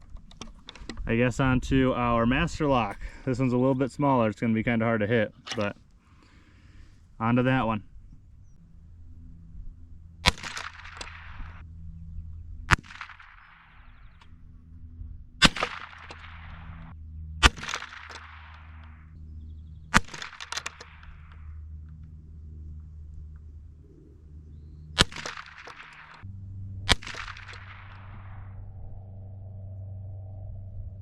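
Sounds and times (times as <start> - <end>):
gunshot echo: 10.2 - 11.6, 12.7 - 14.1, 15.4 - 19.1, 19.9 - 21.5, 25.0 - 26.2, 26.8 - 28.6
rifle shots: 10.2 - 11.6, 12.7 - 14.2, 15.4 - 19.1, 19.9 - 21.6, 25.0 - 26.2, 26.8 - 28.5.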